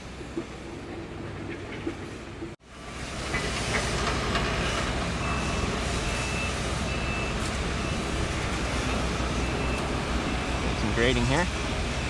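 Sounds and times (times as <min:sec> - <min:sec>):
low rumble of construction site: 0:00.0 - 0:12.0
backup alarm beeping: 0:05.2 - 0:11.5.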